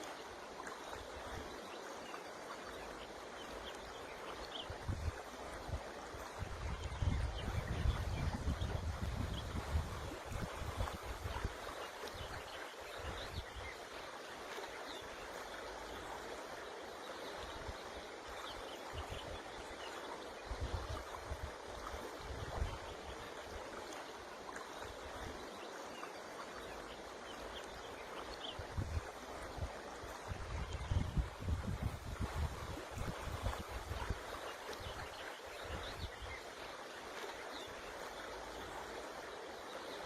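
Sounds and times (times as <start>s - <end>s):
river water rushing: 0.0s - 40.0s
wind buffeting microphone: 4.7s - 11.7s, 28.6s - 35.0s.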